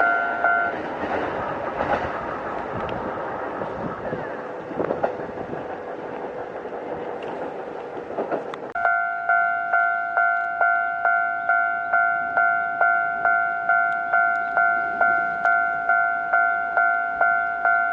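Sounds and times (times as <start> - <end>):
level crossing bell ringing: 0.0 - 0.8, 8.8 - 17.9
train passing on rails: 0.0 - 17.9.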